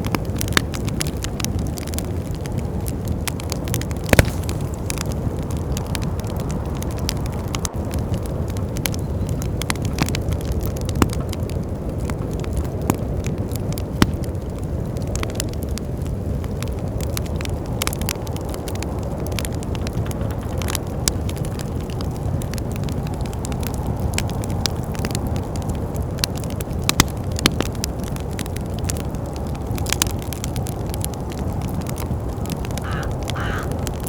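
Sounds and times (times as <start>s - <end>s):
wood fire crackling: 0.0s - 34.0s
sharp pops: 4.0s - 5.2s
low rumble: 16.7s - 34.0s.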